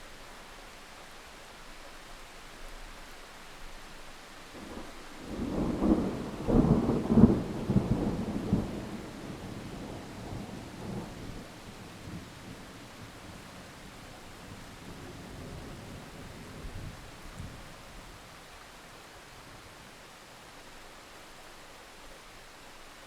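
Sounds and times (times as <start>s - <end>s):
steady rain hiss: 0.0s - 23.0s
thunder rolling: 4.6s - 13.1s.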